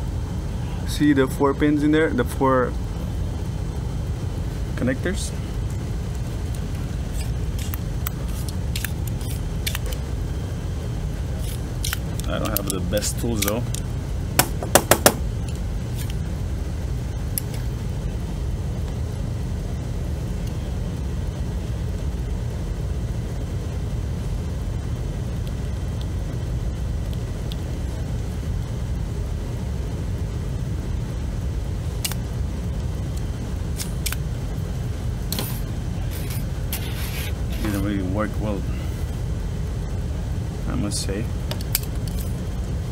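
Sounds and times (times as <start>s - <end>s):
steady low rumble: 0.0s - 42.9s
desoldering pump snapping: 5.6s - 10.0s, 11.3s - 16.2s, 32.0s - 32.3s, 33.1s - 34.3s.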